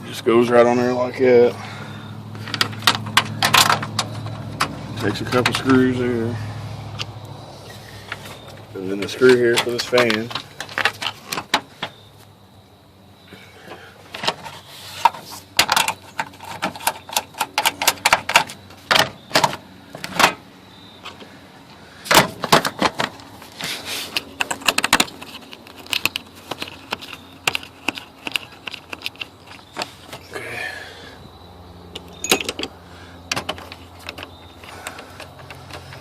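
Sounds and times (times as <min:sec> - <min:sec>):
screws and tools clinking: 0:14.1 - 0:18.6, 0:22.6 - 0:30.4, 0:31.9 - 0:32.7.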